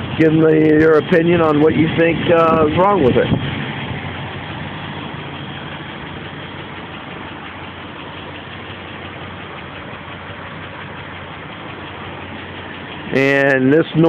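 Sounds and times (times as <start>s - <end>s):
car engine idling: 0.0s - 14.0s
rapid engine ticking: 0.0s - 14.0s.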